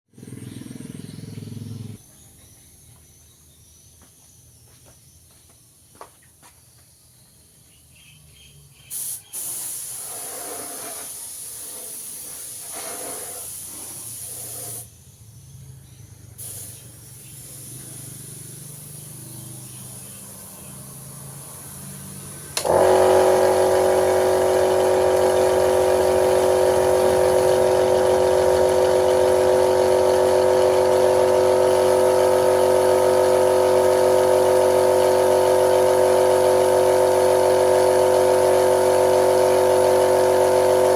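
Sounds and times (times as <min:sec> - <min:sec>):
hissing paint spray: 0:08.8 - 0:14.9, 0:16.3 - 0:40.9
motor whining: 0:20.7 - 0:40.9.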